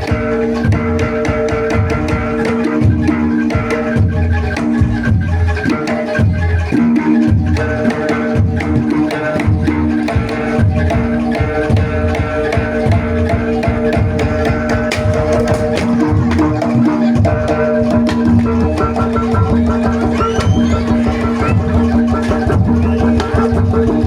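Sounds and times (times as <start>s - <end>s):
drums in busy rhythm: 0.0s - 24.0s
held musical tones: 2.2s - 24.0s.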